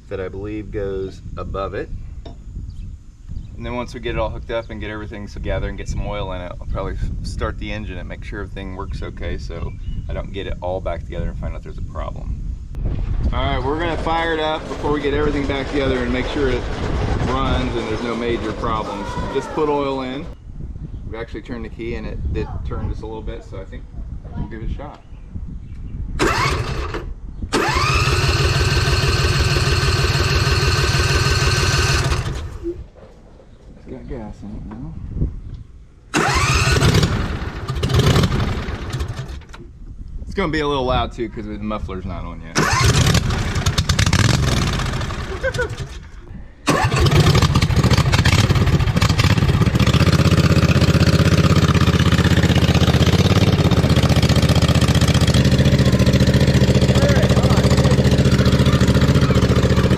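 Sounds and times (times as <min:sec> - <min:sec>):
engine turning over without catching: 0:13.4 - 0:20.4, 0:26.2 - 0:32.8, 0:36.1 - 0:39.6, 0:42.6 - 0:59.9
electric starter whining: 0:13.7 - 0:20.4, 0:26.2 - 0:32.8, 0:36.1 - 0:39.6, 0:42.6 - 0:59.9
unmuffled engine running: 0:14.5 - 0:18.6.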